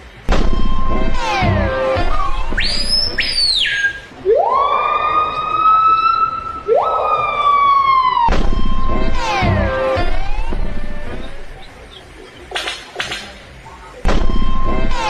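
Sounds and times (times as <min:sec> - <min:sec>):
siren-like wail: 0:00.3 - 0:11.6, 0:14.1 - 0:15.0.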